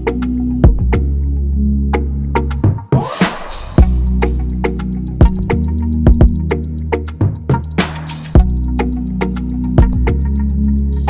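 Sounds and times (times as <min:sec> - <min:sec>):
bass line: 0:00.0 - 0:11.0
whooshing noise sweep: 0:02.9 - 0:05.7
heavy bass drum hit: 0:03.4 - 0:06.5, 0:07.8 - 0:08.7
drum machine music: 0:03.8 - 0:11.0
hi-hat ticks: 0:03.8 - 0:11.0.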